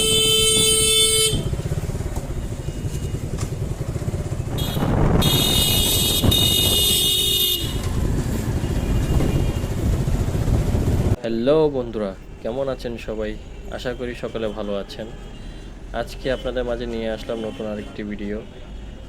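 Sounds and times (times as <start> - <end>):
motorcycle horn: 0.0 - 10.0
motorcycle engine idling: 0.1 - 7.8.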